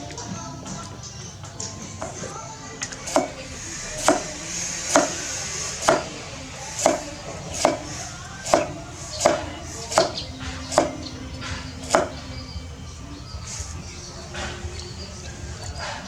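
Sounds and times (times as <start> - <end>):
knife chopping on cutting board: 3.1 - 3.4, 4.0 - 6.1, 6.8 - 7.0, 7.6 - 7.9, 8.5 - 11.0.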